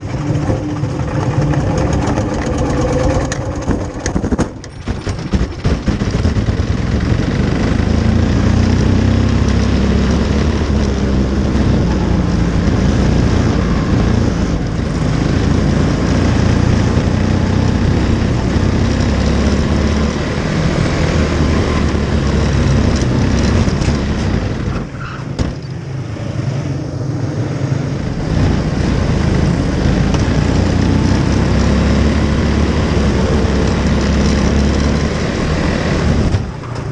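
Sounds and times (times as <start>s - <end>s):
race car engine running hard: 0.0s - 25.0s, 25.8s - 36.9s
chassis rattle: 0.0s - 25.8s
wind: 0.0s - 36.9s.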